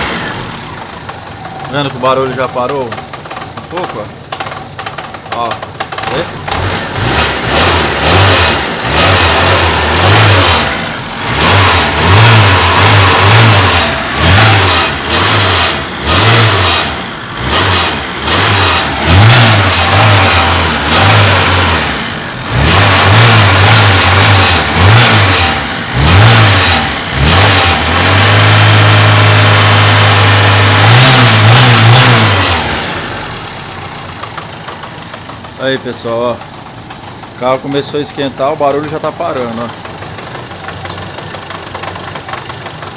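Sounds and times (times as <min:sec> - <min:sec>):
car engine revving: 0:00.0 - 0:42.9
gearbox rattle: 0:00.9 - 0:06.2.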